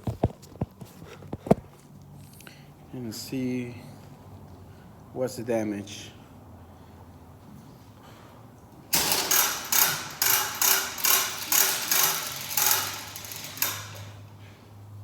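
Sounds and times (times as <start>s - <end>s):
ratchet wrench clicking: 8.9s - 14.4s.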